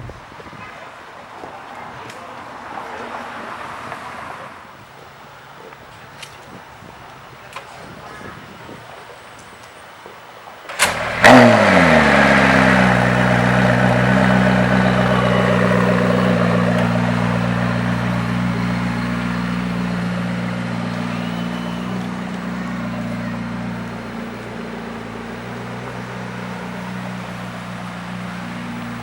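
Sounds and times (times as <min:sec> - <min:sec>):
car engine starting and idling: 0:10.6 - 0:29.0.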